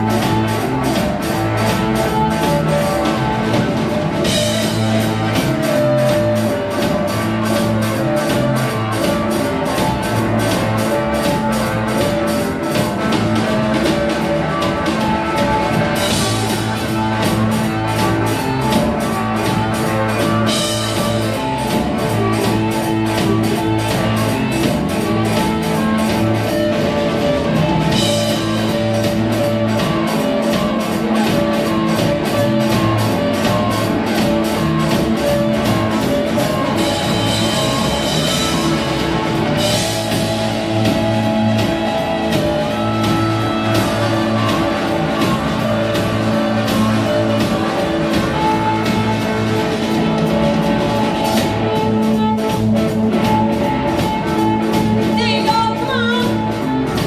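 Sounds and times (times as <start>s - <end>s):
drum kit steady beat: 0.0s - 57.0s
electric guitar: 0.0s - 57.0s.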